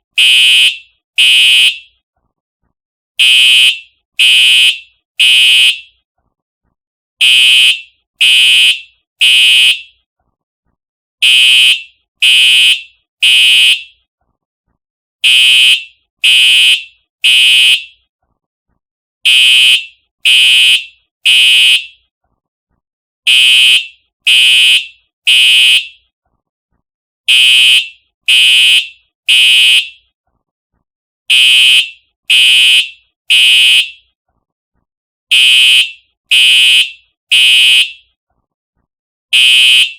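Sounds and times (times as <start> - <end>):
fire alarm horn blasts: 0.2 - 1.9, 3.2 - 5.9, 7.2 - 10.0, 11.2 - 14.0, 15.2 - 18.0, 19.2 - 22.0, 23.3 - 26.0, 27.3 - 30.1, 31.3 - 34.1, 35.3 - 38.1, 39.3 - 39.9.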